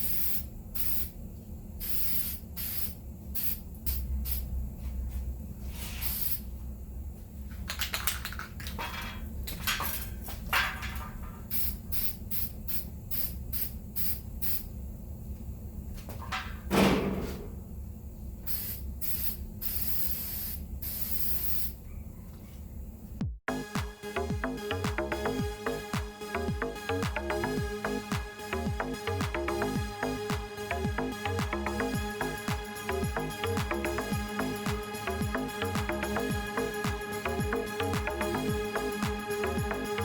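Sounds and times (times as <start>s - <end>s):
spray paint can hissing: 0.0s - 1.2s, 1.8s - 4.5s, 5.9s - 6.5s, 11.5s - 14.7s, 18.4s - 21.8s
loud knock: 16.7s - 17.6s.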